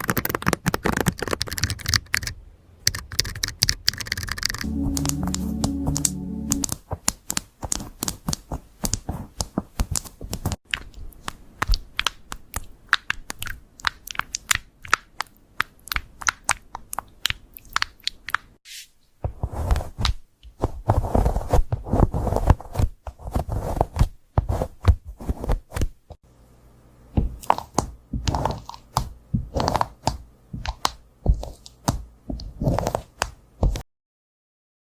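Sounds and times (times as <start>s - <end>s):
fast keyboard typing: 0.0s - 5.1s.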